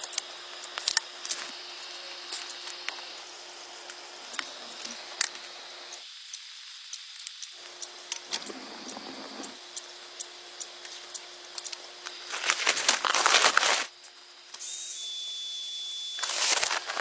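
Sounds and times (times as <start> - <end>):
steady outdoor hiss: 0.0 - 15.0
small sharp clicks and taps: 6.9 - 12.2.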